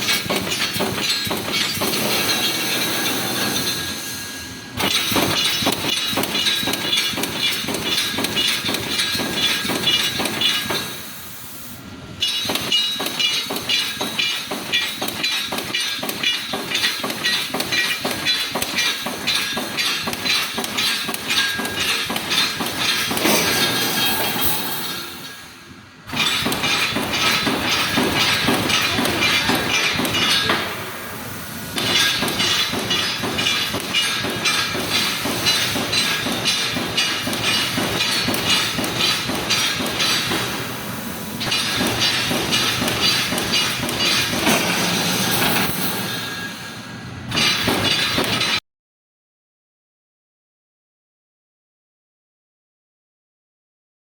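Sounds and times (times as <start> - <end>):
welding machine clattering: 0.0 - 4.1, 4.8 - 11.1, 12.2 - 25.5, 26.1 - 30.8, 31.7 - 46.7, 47.3 - 48.6.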